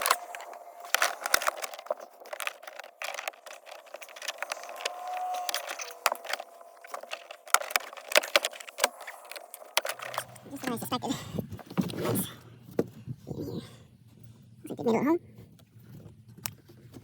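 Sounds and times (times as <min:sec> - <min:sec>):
plastic trim and tools rattling: 0:00.0 - 0:11.0.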